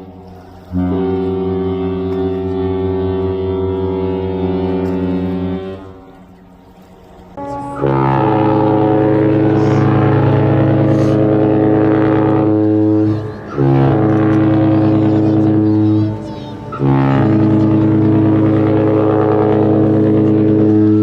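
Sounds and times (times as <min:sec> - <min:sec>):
deep ship horn blasts: 0:00.0 - 0:21.0.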